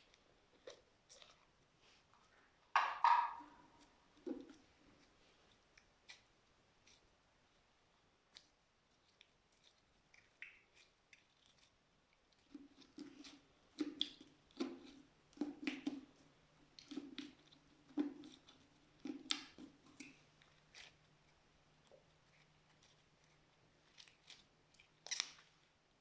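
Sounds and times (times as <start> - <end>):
soft low squelch: 0.0 - 2.7, 3.5 - 26.0.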